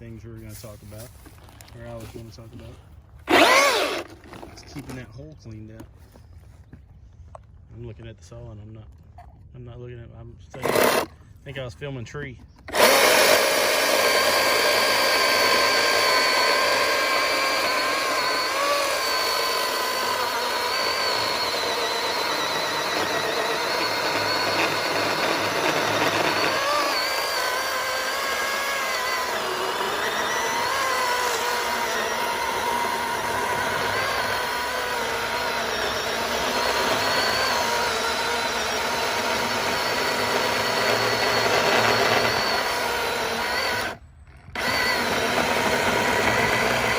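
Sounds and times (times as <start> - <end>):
electric chainsaw cutting wood: 3.3 - 5.0, 10.6 - 11.1, 12.7 - 46.9.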